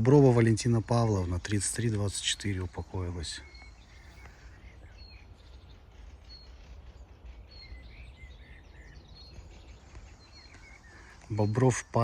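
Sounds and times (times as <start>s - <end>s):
small birds chirping and singing: 0.0s - 12.0s
low steady rumble: 3.8s - 10.5s.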